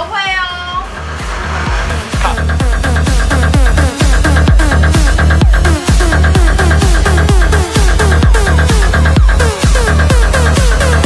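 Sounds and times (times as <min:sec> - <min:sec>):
electronic dance music: 0:00.0 - 0:11.0
kick drum beat: 0:02.2 - 0:11.0.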